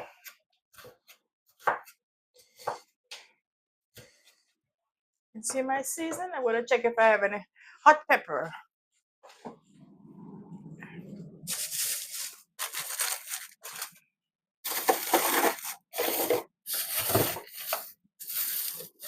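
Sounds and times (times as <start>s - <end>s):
rustling and crinkling: 9.7s - 14.0s, 14.7s - 19.0s.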